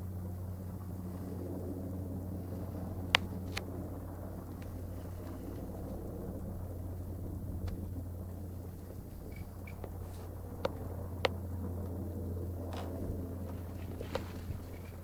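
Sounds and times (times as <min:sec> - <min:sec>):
distant low mechanical drone: 0:00.0 - 0:15.0.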